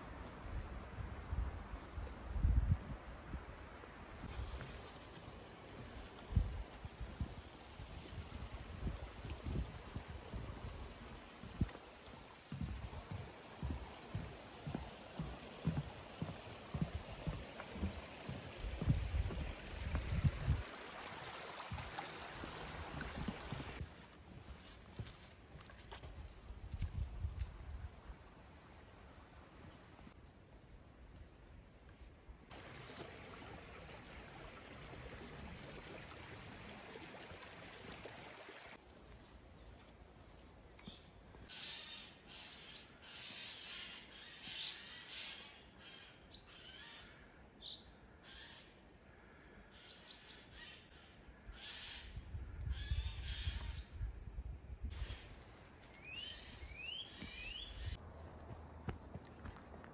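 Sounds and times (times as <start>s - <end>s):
wind buffeting microphone: 0.4s - 3.6s, 6.3s - 11.7s, 16.7s - 20.7s
birds chirping: 55.9s - 58.0s.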